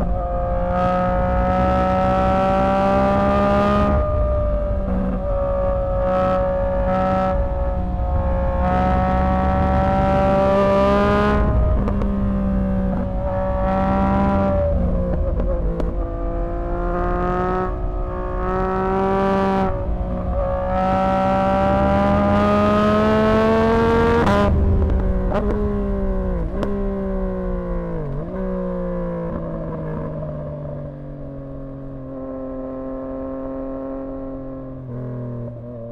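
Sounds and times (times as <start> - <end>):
motorcycle engine accelerating: 0.0 - 35.9
exhaust pops: 14.2 - 16.2, 24.1 - 30.0.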